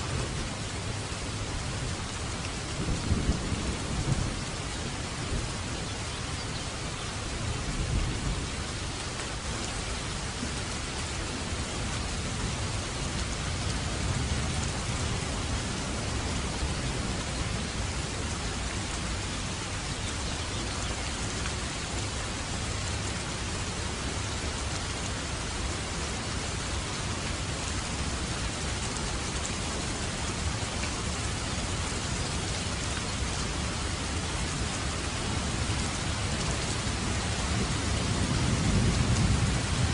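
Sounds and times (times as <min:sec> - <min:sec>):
steady rainfall hissing: 0:00.0 - 0:39.9
distant thunder rumble: 0:02.8 - 0:06.8, 0:35.5 - 0:39.9.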